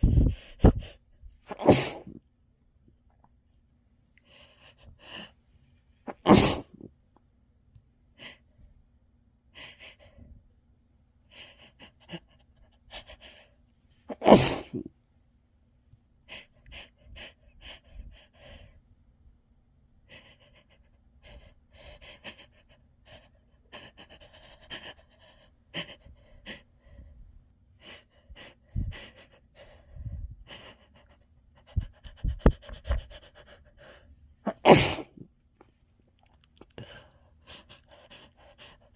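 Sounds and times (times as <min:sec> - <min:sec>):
panting and gasping breaths: 0:00.0 - 0:02.2, 0:04.2 - 0:06.8, 0:09.5 - 0:10.4, 0:11.2 - 0:14.8, 0:16.2 - 0:18.8, 0:20.0 - 0:35.2, 0:36.4 - 0:38.9
person sneezing: 0:01.5 - 0:02.2, 0:06.1 - 0:06.9, 0:14.1 - 0:14.9, 0:34.5 - 0:35.2.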